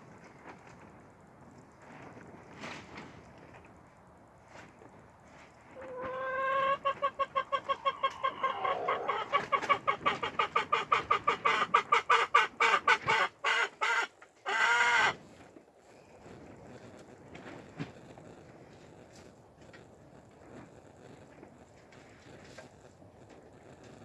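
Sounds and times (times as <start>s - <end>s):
animal calling: 5.8s - 15.2s.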